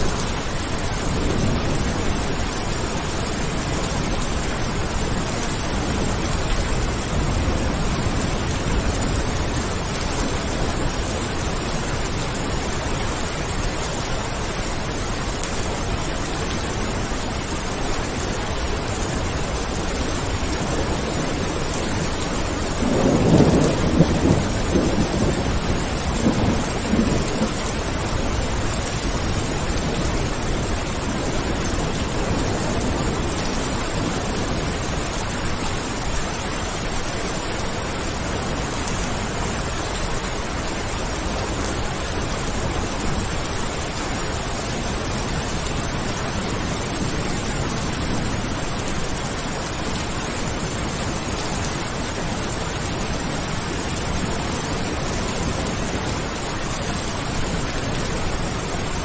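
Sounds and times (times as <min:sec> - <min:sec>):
steady rain falling: 0:00.0 - 0:59.0
thunder rumbling: 0:00.0 - 0:59.0.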